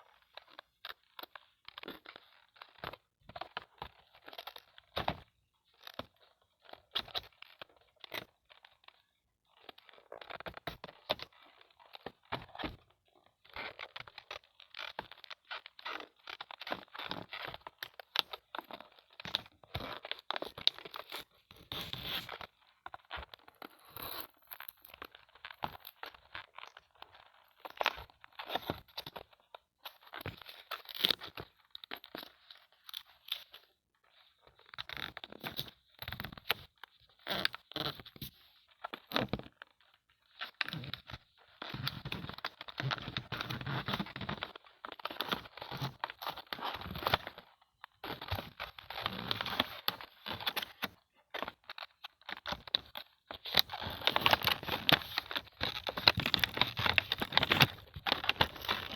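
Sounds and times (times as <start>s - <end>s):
packaging crinkling and rustling: 51.6s - 58.9s.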